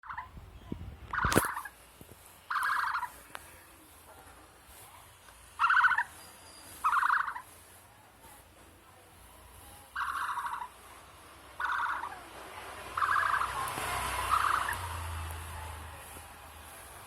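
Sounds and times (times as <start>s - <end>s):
bird rattling calls: 2.5s - 3.1s, 5.6s - 7.5s, 9.9s - 10.7s, 11.6s - 12.2s, 12.9s - 15.1s.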